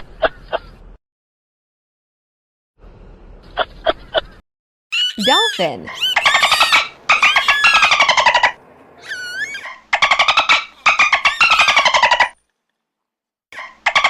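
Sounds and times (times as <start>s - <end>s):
dolphin whistle: 4.9s - 8.2s, 9.0s - 9.7s.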